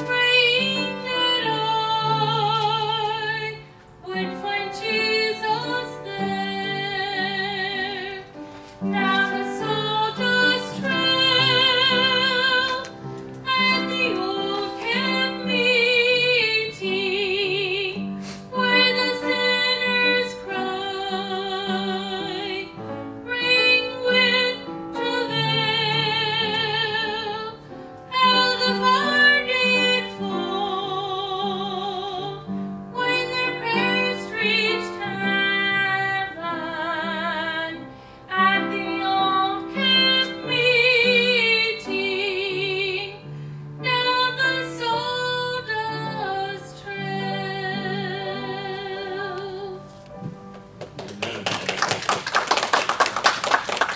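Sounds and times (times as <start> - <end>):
instrumental accompaniment: 0.0 - 52.1
woman singing gospel: 8.9 - 22.7, 23.3 - 43.2, 43.8 - 49.8.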